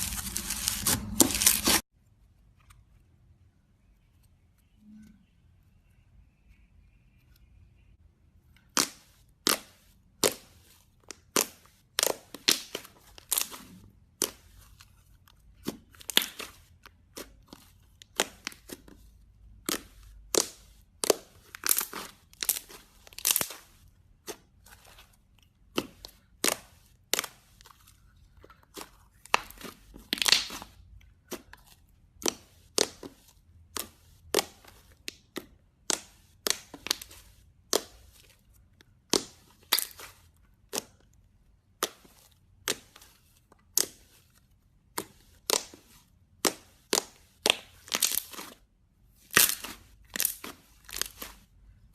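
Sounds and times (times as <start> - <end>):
slime popping and crackling: 0.0 - 1.8, 19.6 - 23.7, 29.2 - 30.8, 39.0 - 40.0, 46.4 - 48.6, 49.2 - 51.4.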